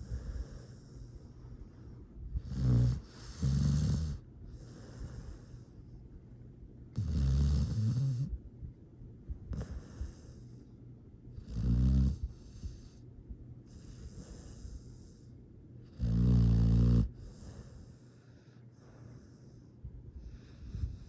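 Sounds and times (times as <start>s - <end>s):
soft airy breaths: 0.0s - 7.0s, 7.7s - 11.5s, 12.1s - 16.0s, 17.0s - 21.0s
pet snoring: 2.4s - 5.7s, 7.0s - 8.3s, 11.4s - 13.0s, 13.7s - 15.2s, 15.9s - 18.1s.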